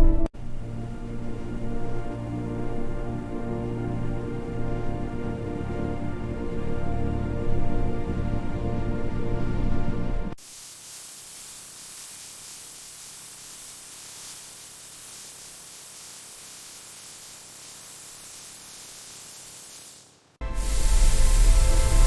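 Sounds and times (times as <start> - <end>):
hissing spray: 10.4 - 22.0.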